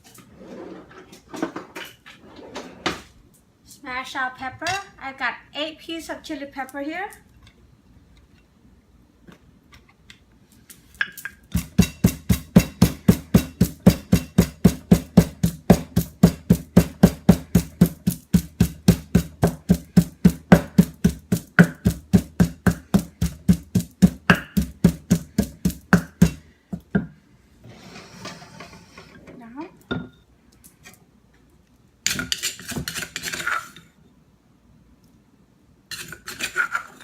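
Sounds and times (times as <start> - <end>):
heavy pounding of chili peppers: 11.5 - 26.5.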